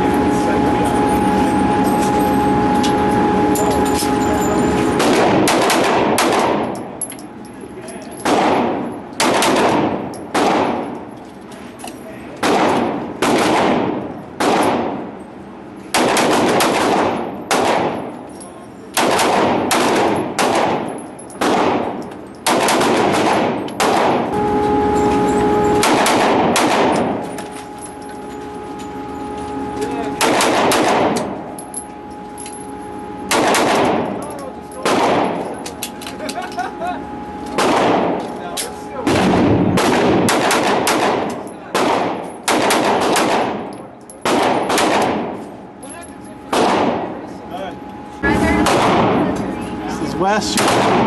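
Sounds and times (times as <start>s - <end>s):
loud droning hum: 0.0s - 51.0s
gunshots with ringing echo: 1.3s - 6.8s, 8.2s - 11.0s, 12.4s - 15.1s, 15.9s - 18.2s, 19.0s - 28.0s, 30.1s - 35.6s, 37.6s - 38.2s, 39.0s - 45.4s, 46.5s - 47.2s, 48.5s - 49.4s, 50.6s - 51.0s.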